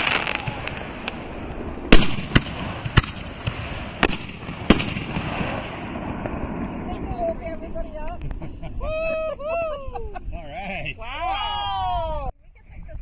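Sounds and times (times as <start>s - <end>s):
firework cakes banging: 0.0s - 8.4s.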